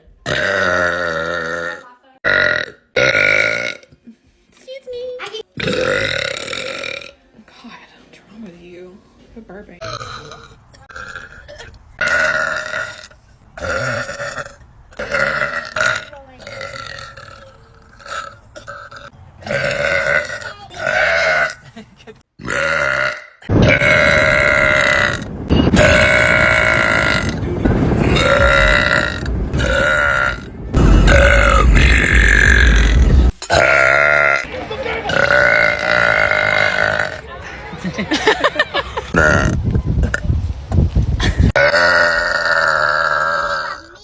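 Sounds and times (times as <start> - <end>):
woman burping: 0.2 - 4.0, 5.6 - 7.2, 9.8 - 27.4, 30.8 - 37.2, 39.1 - 40.2, 41.5 - 43.8.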